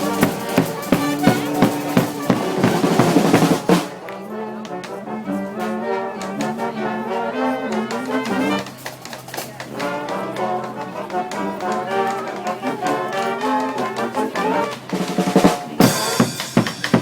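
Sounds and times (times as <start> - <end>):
drum hits: 0.0 - 4.0, 14.9 - 17.0
trumpets and trombones: 0.0 - 17.0.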